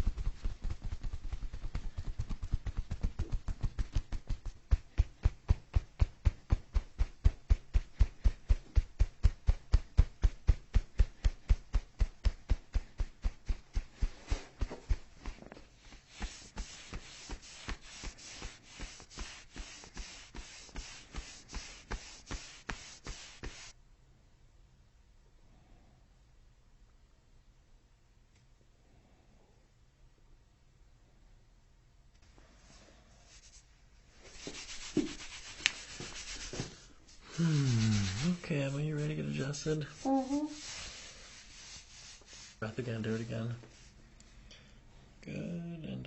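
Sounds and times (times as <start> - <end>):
percussive massage thuds: 0.0 - 23.7.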